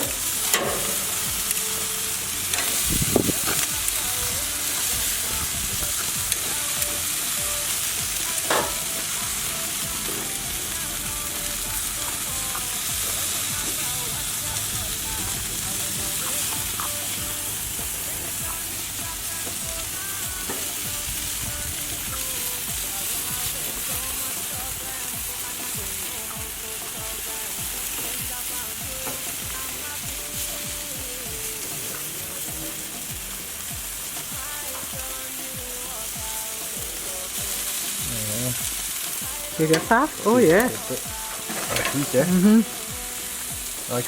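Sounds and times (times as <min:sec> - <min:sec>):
chicken sizzling on a grill: 0:00.0 - 0:44.0.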